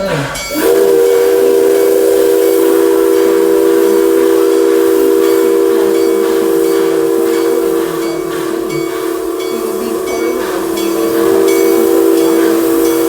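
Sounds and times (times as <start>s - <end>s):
steam hissing: 0.0s - 13.0s
steam locomotive whistle: 0.0s - 13.0s.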